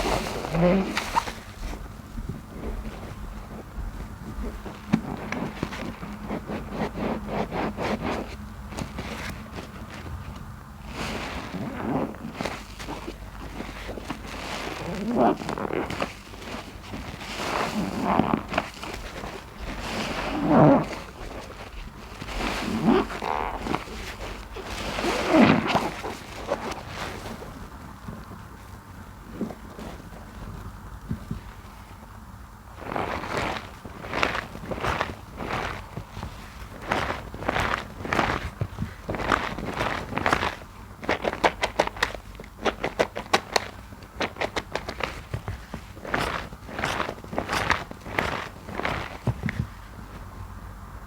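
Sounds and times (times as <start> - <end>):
wet sponge squelching: 32.8 - 49.8.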